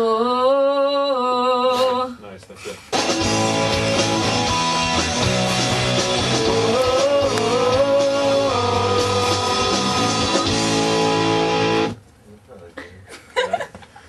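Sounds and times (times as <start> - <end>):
loud rock music with guitars: 3.0 - 12.0
person singing: 3.5 - 11.2.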